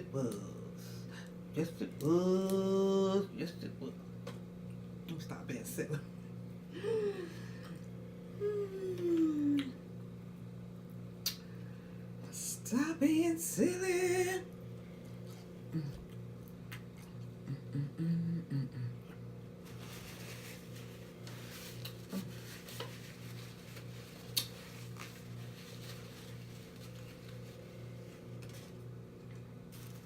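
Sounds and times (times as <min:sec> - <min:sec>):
steady low hum: 0:00.0 - 0:30.0
person humming: 0:06.7 - 0:09.8, 0:15.6 - 0:16.2, 0:17.3 - 0:19.3
person chewing: 0:15.2 - 0:17.6, 0:24.1 - 0:24.6.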